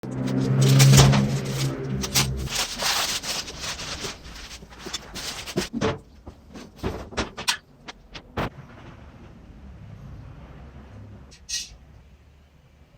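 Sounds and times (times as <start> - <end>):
low hum: 0.0 - 5.6
rubbing and scraping: 0.0 - 8.5.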